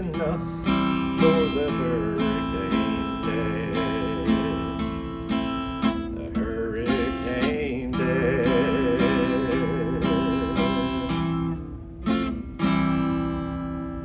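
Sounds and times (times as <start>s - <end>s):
acoustic guitar strumming: 0.0s - 14.0s
wavering melody line: 7.4s - 11.7s.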